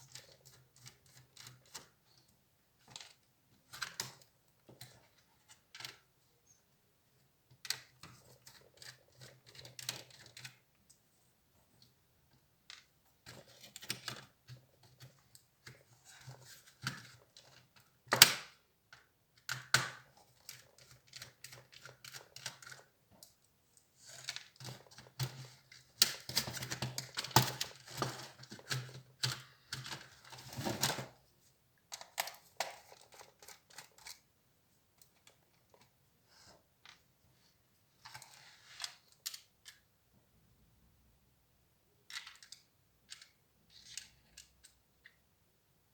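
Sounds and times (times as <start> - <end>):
laptop parts clicking and rattling: 7.6 - 10.6, 19.0 - 23.3, 31.9 - 34.3, 42.1 - 44.8.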